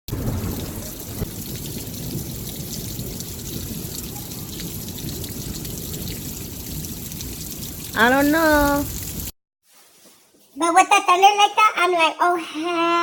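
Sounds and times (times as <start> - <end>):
raindrops ticking: 0.1 - 9.3.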